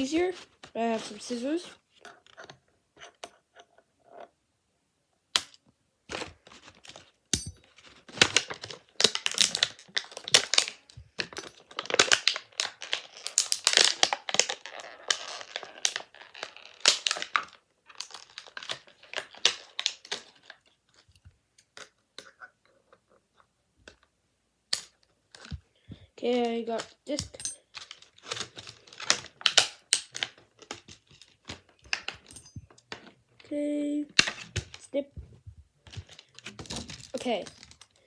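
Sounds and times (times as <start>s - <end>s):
packaging tearing and crinkling: 8.0s - 20.6s.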